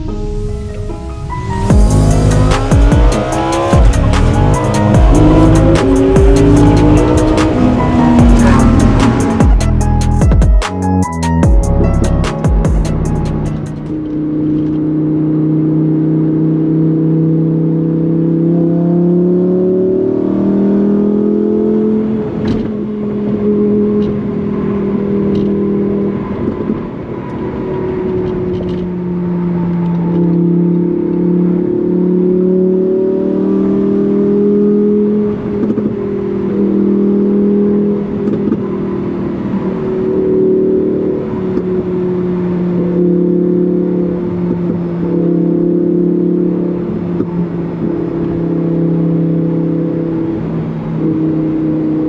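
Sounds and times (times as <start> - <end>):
sports car engine and exhaust: 0.0 - 52.0.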